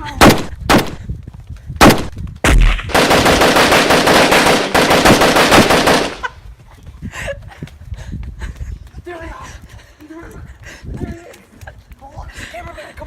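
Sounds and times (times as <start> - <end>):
airsoft rifle firing full auto: 2.6 - 6.3.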